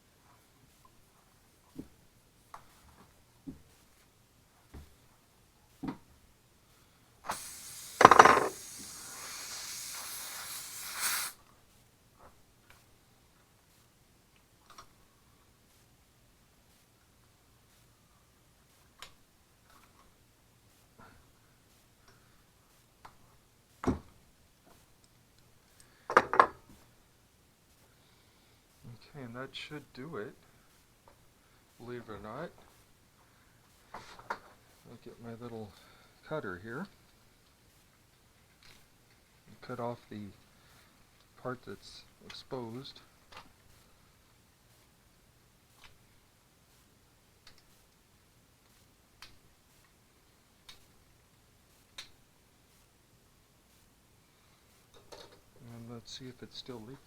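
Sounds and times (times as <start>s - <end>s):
air hissing out of a tire: 7.2s - 11.4s.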